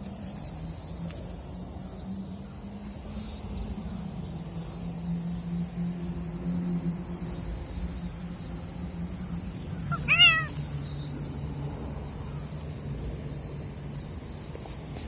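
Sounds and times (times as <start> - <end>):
insects droning: 0.0 - 15.0
cat meowing: 9.9 - 10.6.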